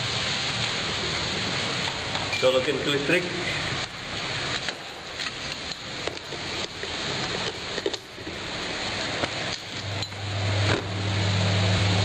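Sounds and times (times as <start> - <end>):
steady hiss: 0.0 - 12.0
washing machine motor humming: 5.8 - 12.0.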